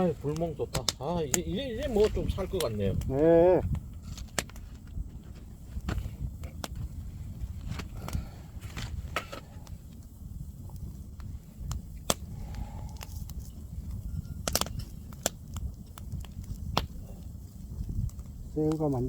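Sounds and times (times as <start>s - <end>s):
wood fire crackling: 0.0s - 19.0s
sharp pops: 0.2s - 4.6s, 10.7s - 19.0s
low steady rumble: 4.9s - 18.6s.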